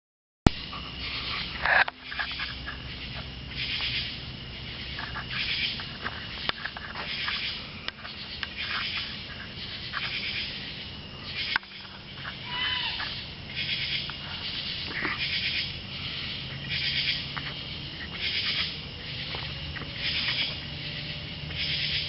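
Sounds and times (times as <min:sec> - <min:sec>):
night insects pulsing: 0:00.5 - 0:22.0
animal cry: 0:12.4 - 0:14.1.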